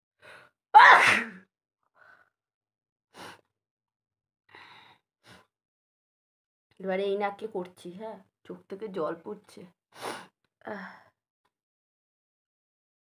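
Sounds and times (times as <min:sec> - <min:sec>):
woman sneezing: 0:00.8 - 0:01.4.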